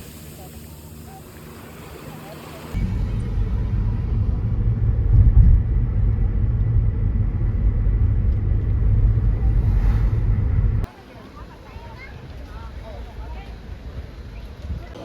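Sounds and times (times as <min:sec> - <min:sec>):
loud low rumble: 0:02.7 - 0:10.9.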